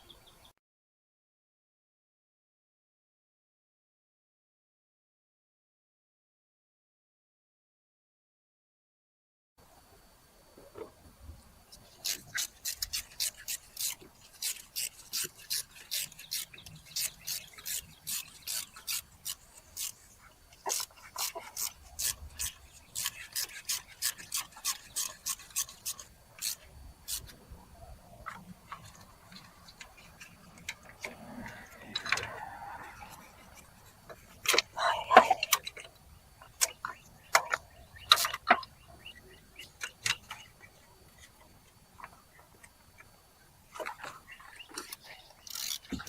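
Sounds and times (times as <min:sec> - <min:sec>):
ratchet clicking: 0:12.0 - 0:20.0, 0:45.4 - 0:46.0.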